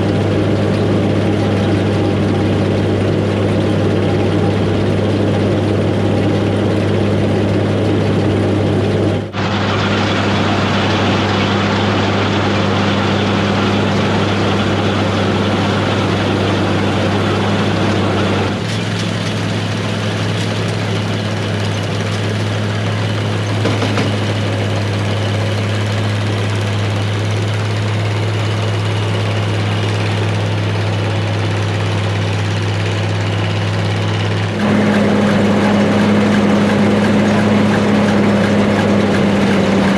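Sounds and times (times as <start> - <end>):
combine engine drone: 0.0 - 39.9.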